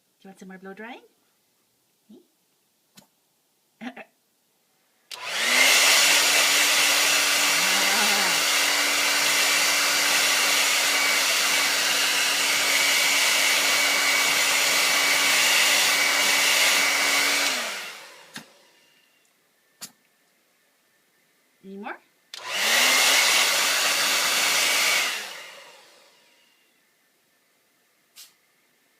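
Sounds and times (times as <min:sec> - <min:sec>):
blow dryer running: 0:05.1 - 0:18.9, 0:22.4 - 0:26.4.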